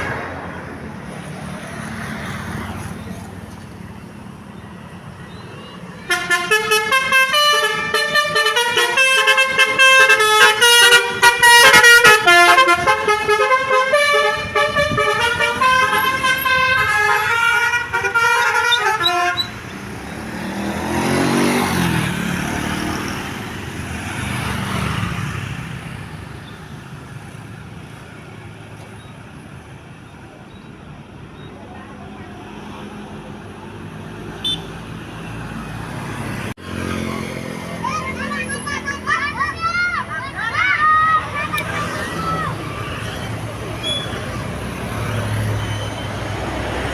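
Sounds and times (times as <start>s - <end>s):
vehicle noise: 0.0s - 46.9s
multi-tone bus horn melody: 6.0s - 19.7s, 34.4s - 34.9s.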